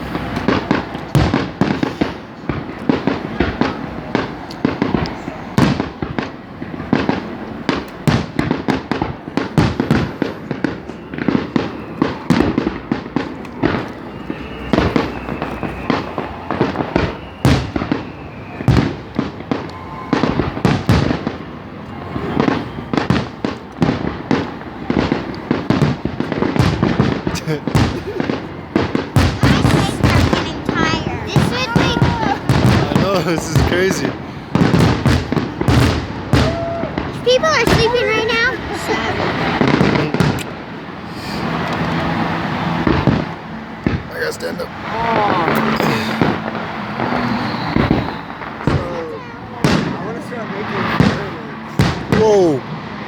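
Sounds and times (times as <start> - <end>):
fireworks bangs and crackles: 0.0 - 53.0
faint whistling tone: 10.8 - 12.4, 13.9 - 18.9, 19.6 - 20.4, 47.1 - 48.4.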